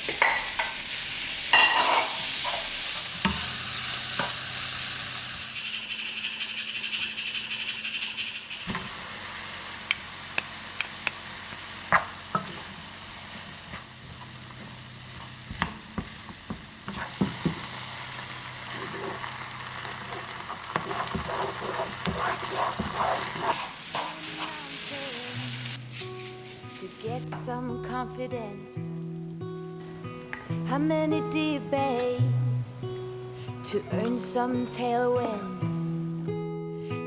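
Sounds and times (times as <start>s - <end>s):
rice sizzling in a pan: 0.0s - 27.2s.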